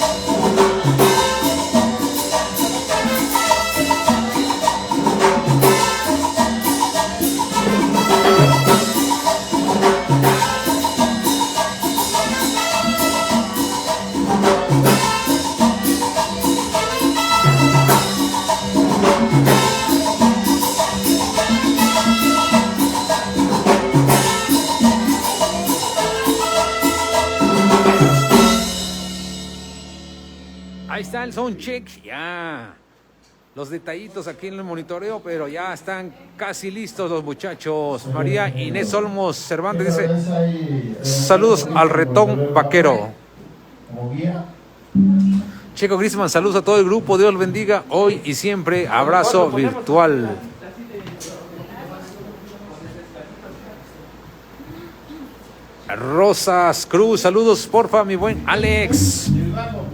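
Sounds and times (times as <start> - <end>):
percussion: 0.0 - 32.0, 44.8 - 49.8, 54.2 - 59.9
bass line: 0.0 - 32.4, 45.0 - 45.7, 58.1 - 59.9
salsa band playing: 0.0 - 32.6, 41.0 - 43.0, 44.6 - 50.5, 54.4 - 59.9
keyboard figures: 30.7 - 32.7, 58.2 - 59.9.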